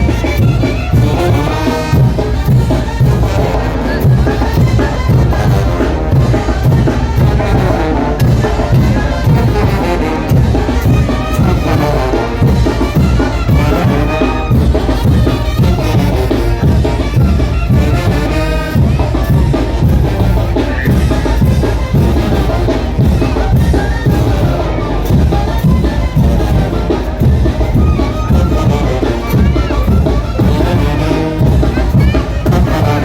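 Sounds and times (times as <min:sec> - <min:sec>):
brass band playing: 0:00.0 - 0:33.0
steady drum beat: 0:00.0 - 0:33.0.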